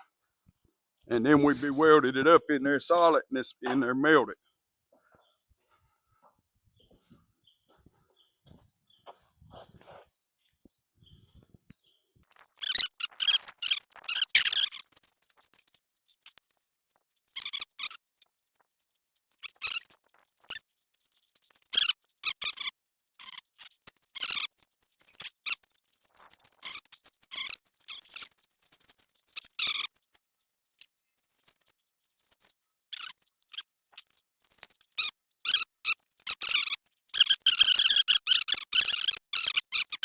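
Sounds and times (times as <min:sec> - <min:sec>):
short squeaks and scrapes: 0:12.4 - 0:15.2, 0:17.3 - 0:18.0, 0:21.6 - 0:30.0, 0:31.5 - 0:40.0.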